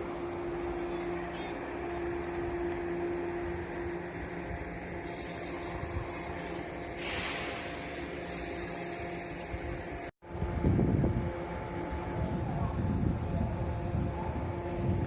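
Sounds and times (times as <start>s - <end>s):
electric train equipment humming: 0.0s - 15.0s
burst of hiss: 5.0s - 6.2s, 7.0s - 10.0s.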